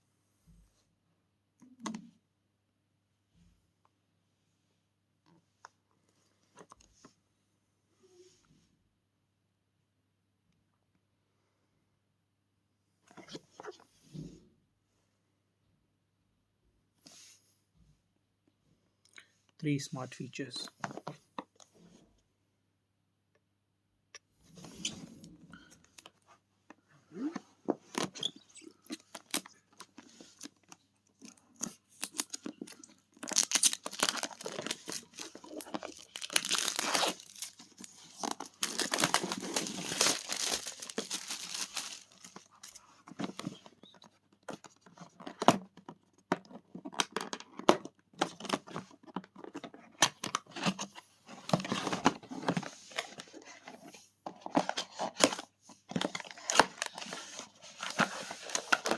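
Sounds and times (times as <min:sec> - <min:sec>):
packing material tearing and crinkling: 0:31.6 - 0:42.8.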